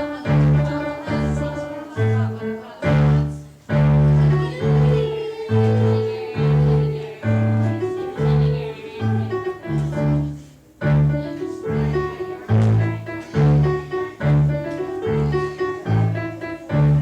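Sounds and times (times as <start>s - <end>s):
held melody line: 0.0s - 17.0s
piano tune: 0.0s - 17.0s
deep bass note: 2.9s - 4.9s.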